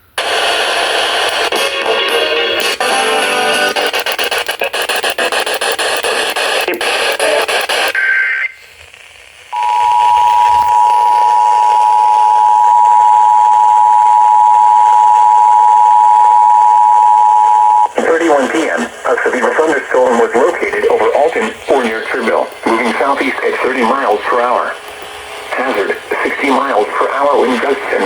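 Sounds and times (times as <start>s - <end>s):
two-tone attention signal: 9.6s - 17.9s.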